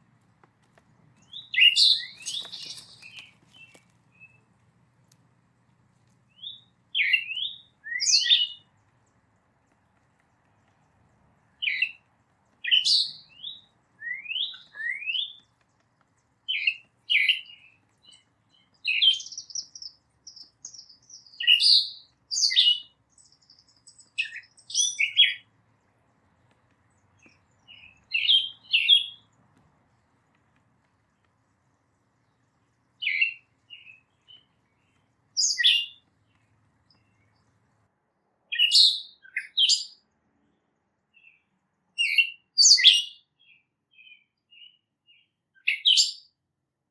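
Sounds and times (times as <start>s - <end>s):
songbird chirps: 0.0s - 37.9s, 38.5s - 46.4s
thin whistled bird notes: 1.1s - 5.2s, 6.0s - 37.6s.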